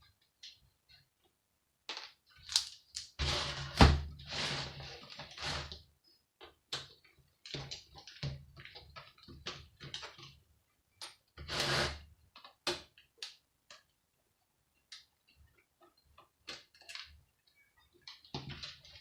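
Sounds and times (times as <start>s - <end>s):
long scrape of monitor parts: 3.2s - 5.8s, 11.4s - 12.1s.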